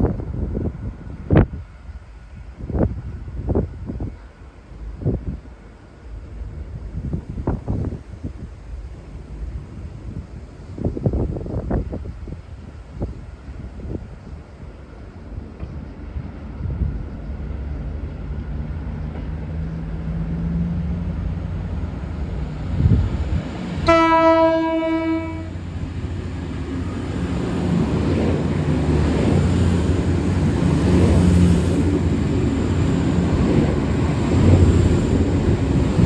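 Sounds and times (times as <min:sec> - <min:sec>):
train engine rumble passing: 0:00.0 - 0:36.0
low train horn blast: 0:23.7 - 0:26.1.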